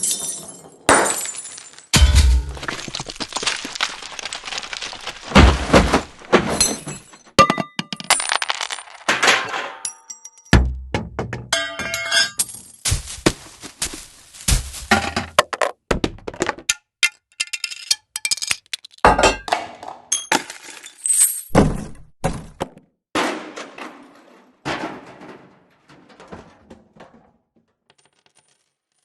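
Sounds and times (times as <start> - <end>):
things breaking: 0.0 - 10.0, 23.2 - 29.0
heavy thuds: 5.2 - 6.7, 12.9 - 15.2
glass and metal clinking: 6.6 - 10.6, 11.5 - 12.8.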